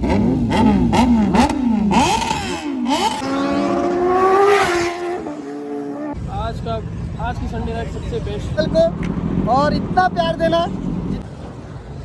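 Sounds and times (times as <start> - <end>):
motorcycle engine revving: 0.0 - 7.6.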